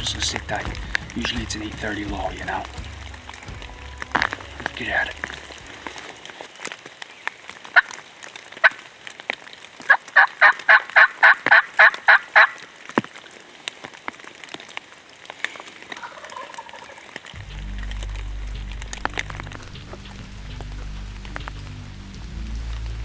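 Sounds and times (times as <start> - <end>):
turkey calling: 16.0 - 17.1.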